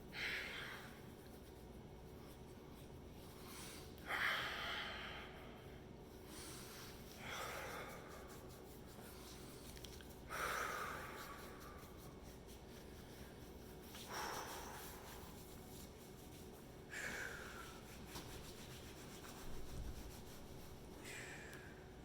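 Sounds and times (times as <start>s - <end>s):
man breathing deeply: 3.5s - 5.6s.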